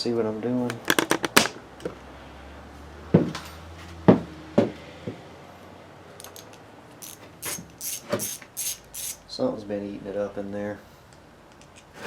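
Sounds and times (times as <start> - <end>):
metal parts knocking: 0.7 - 1.6.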